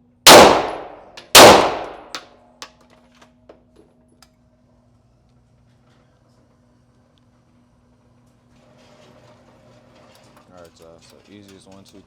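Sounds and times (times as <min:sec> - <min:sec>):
pistol shots echoing: 0:00.3 - 0:02.2.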